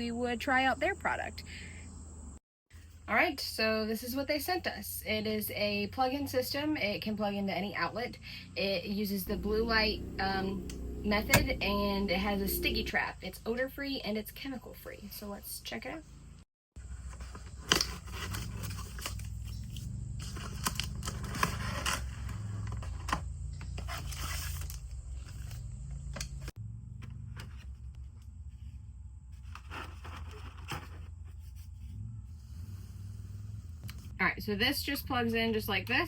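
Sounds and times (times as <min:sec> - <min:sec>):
packaging scraping and tearing: 0:17.2 - 0:23.0, 0:23.8 - 0:25.7.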